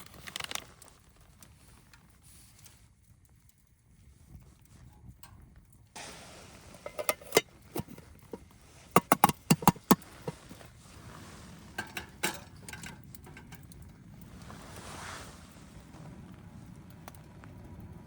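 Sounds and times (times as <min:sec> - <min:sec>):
metal cookware clinking: 0:06.7 - 0:10.4, 0:11.8 - 0:13.7.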